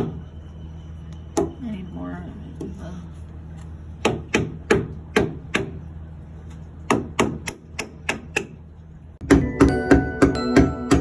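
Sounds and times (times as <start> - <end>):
low steady hum: 0.0 - 11.0
hammer tapping: 9.2 - 11.0
music with bell-like notes: 9.4 - 11.0.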